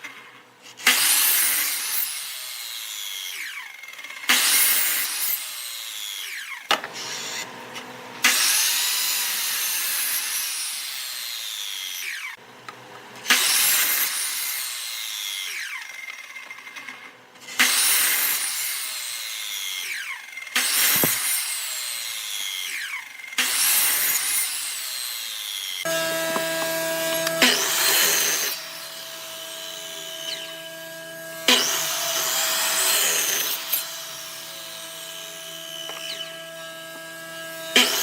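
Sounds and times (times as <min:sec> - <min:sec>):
lathe tool scraping wood: 0:25.9 - 0:36.7.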